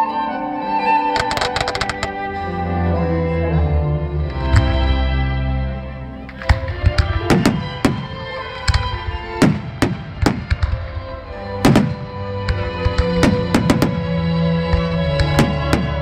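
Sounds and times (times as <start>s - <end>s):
loud music: 0.3s - 16.0s
fireworks bangs: 6.4s - 16.0s.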